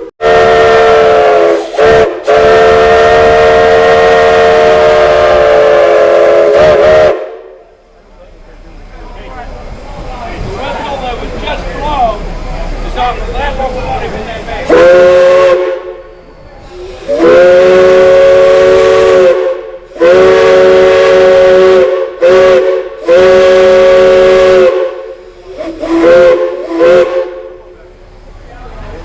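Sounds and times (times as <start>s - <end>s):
steam chime whistle blasts: 0.2s - 7.3s, 14.7s - 27.6s.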